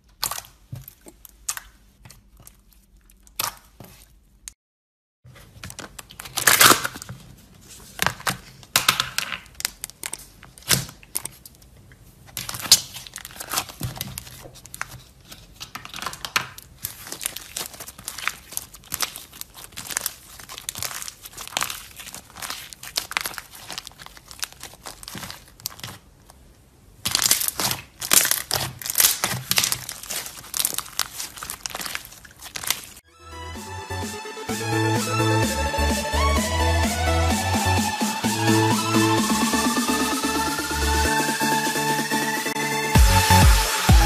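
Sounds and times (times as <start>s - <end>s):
slime crackling and popping: 0.0s - 4.1s, 6.0s - 7.1s, 8.0s - 11.5s, 12.3s - 26.2s, 27.0s - 33.0s.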